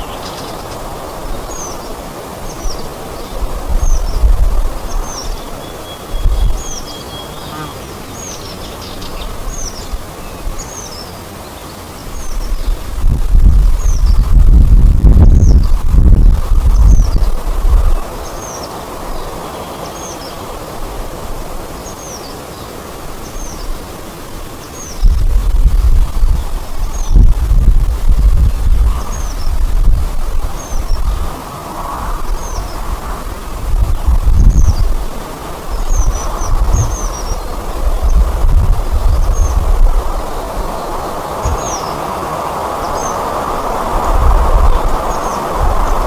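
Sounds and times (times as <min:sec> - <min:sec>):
wind hitting microphone: 0:00.0 - 0:11.1, 0:12.0 - 0:19.5, 0:23.6 - 0:46.0
steady rushing noise: 0:00.0 - 0:46.0
low rumbles: 0:12.3 - 0:18.2, 0:25.0 - 0:46.0
bird calling: 0:40.3 - 0:42.2.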